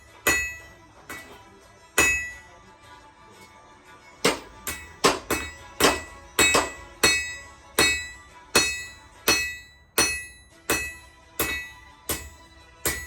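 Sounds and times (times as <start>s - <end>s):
anvil ringing: 0.0s - 2.6s, 4.2s - 13.0s
hammer striking an anvil: 0.0s - 2.6s, 4.2s - 13.0s.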